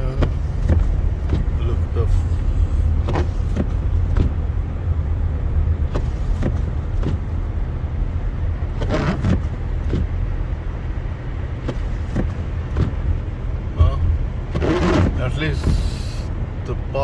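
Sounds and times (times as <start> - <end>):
short knocks: 0.0 - 2.2, 11.6 - 13.2, 13.8 - 16.2
road rumble inside car: 0.0 - 17.0.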